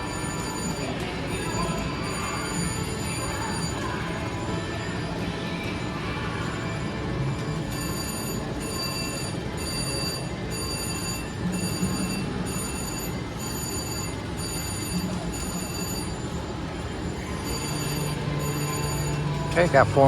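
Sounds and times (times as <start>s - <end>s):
hum and chatter of casino: 0.0s - 20.0s
slot machine chime: 0.0s - 20.0s.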